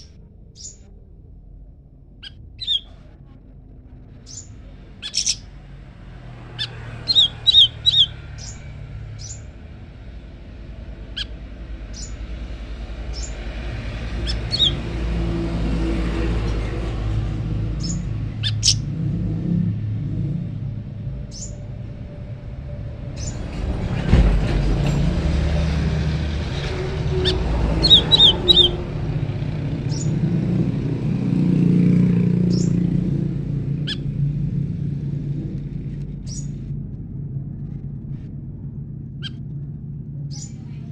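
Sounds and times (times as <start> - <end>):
small songbirds chirping: 0.0 - 0.9, 2.2 - 3.0, 4.0 - 9.6, 11.0 - 15.7, 17.7 - 18.9, 21.2 - 22.1, 23.2 - 23.5, 26.5 - 30.8, 32.1 - 34.1, 36.2 - 36.6, 40.3 - 40.8
low steady rumble: 0.0 - 40.9.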